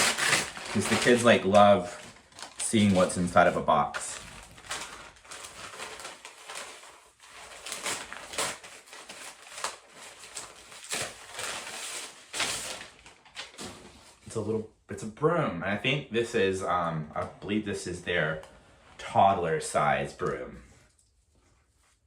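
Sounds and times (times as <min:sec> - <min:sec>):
packing material rustling: 0:00.0 - 0:14.3.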